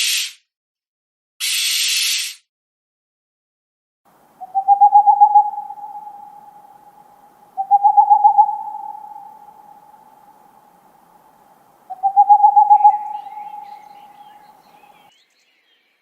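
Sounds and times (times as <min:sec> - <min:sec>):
short hiss: 0:00.0 - 0:00.4, 0:01.4 - 0:02.5
owl hooting: 0:04.4 - 0:15.1.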